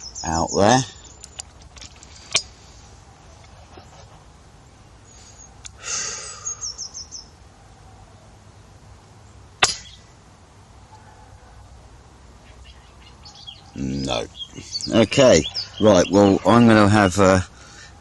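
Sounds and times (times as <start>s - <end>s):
clattering and rustling: 1.2s - 2.6s
air rifle shot: 9.6s - 10.0s.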